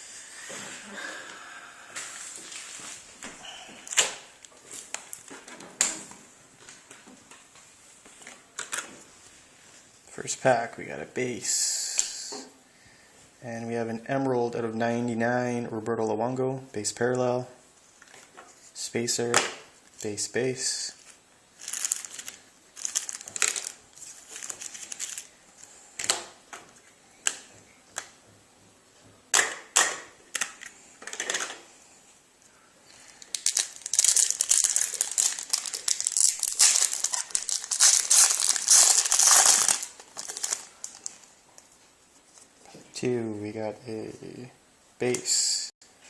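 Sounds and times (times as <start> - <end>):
wrapper crinkling: 21.0 - 25.7, 33.0 - 41.4.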